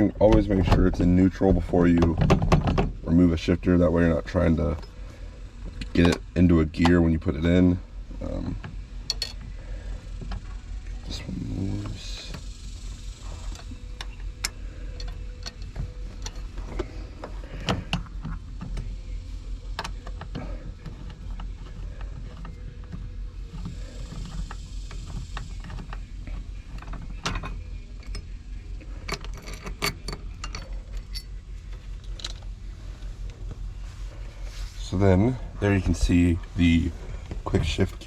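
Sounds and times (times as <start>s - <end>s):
metal tool clicks and clinks: 9.1s - 9.4s, 29.0s - 31.4s
scraping hiss: 23.4s - 26.3s.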